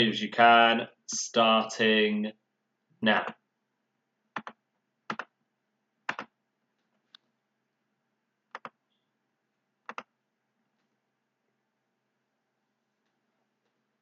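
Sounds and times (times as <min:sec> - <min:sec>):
sharp computer clicks: 0:04.4 - 0:05.3, 0:06.1 - 0:06.3, 0:08.5 - 0:08.8, 0:09.9 - 0:10.1.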